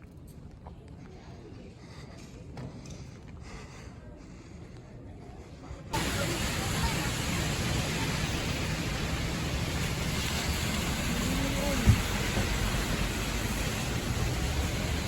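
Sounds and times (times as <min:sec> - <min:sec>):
faint voices: 0:00.5 - 0:13.6
rushing noise with low rumble: 0:06.0 - 0:15.0.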